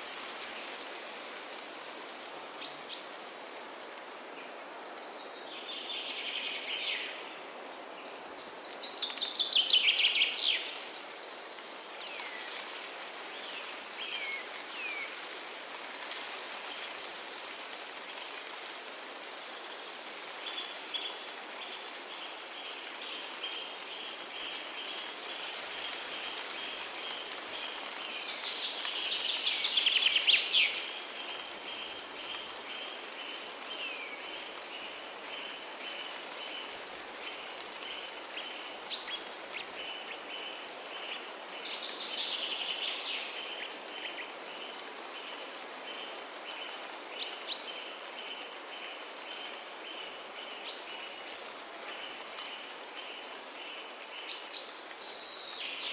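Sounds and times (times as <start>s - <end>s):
steady high hiss: 0.0s - 55.9s.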